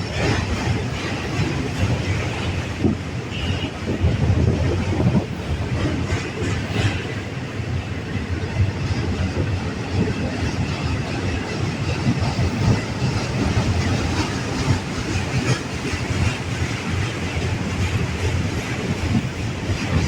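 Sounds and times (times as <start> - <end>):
freight train rumbling past: 0.0 - 20.0
wheels clicking over rail joints: 0.0 - 20.0.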